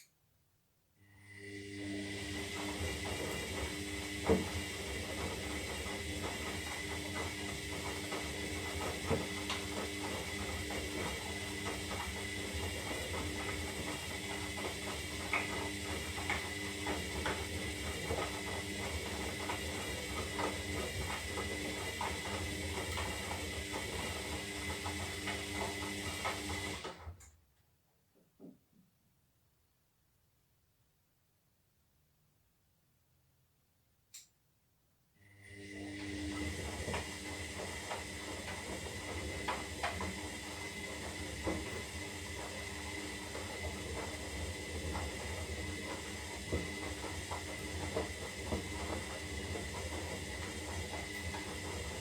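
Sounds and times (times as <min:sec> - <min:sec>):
washing machine running: 0:01.2 - 0:27.2, 0:35.2 - 0:52.0.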